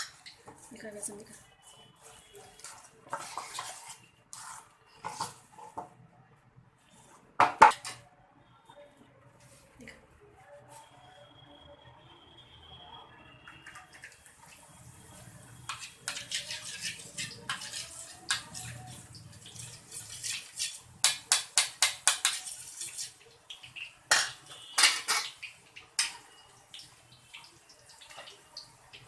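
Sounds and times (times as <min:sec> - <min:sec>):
metal utensils tapping a pan: 0:15.7 - 0:29.0.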